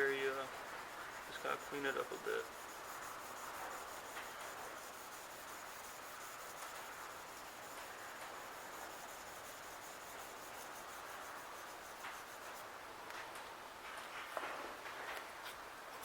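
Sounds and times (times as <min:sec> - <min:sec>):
sandpaper scratching on steel blade: 0:00.0 - 0:12.7.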